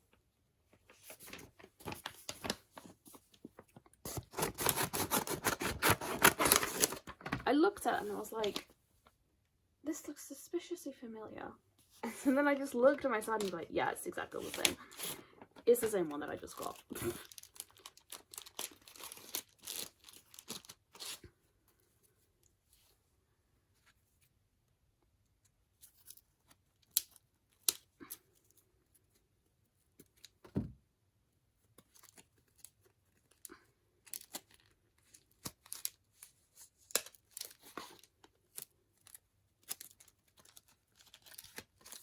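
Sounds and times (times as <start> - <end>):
packaging crinkling and tearing: 3.5 - 7.3, 14.4 - 21.3, 31.9 - 42.0.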